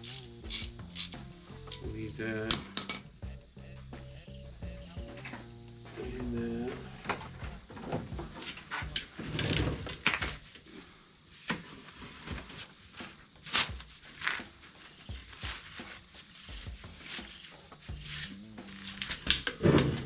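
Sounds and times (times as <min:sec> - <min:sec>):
metal tools clinking and knocking: 0:02.5 - 0:03.1
rustling: 0:05.2 - 0:20.0.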